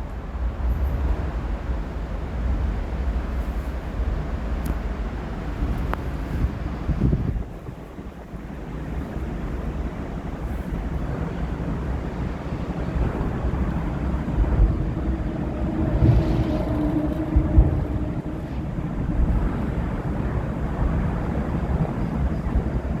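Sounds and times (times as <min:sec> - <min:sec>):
low engine rumble: 0:00.0 - 0:23.0
wind buffeting microphone: 0:00.0 - 0:23.0
humming engine tone: 0:12.5 - 0:20.4.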